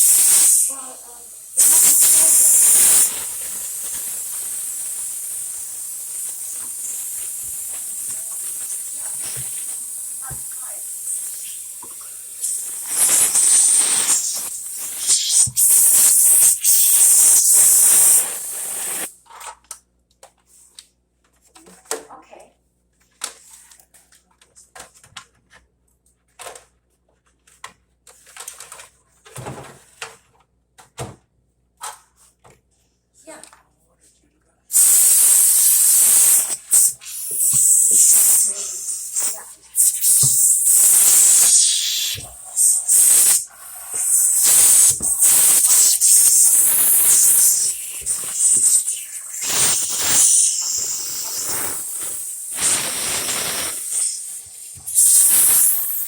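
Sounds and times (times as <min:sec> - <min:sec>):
irregular hissing: 0:00.0 - 0:19.1, 0:34.7 - 0:56.0.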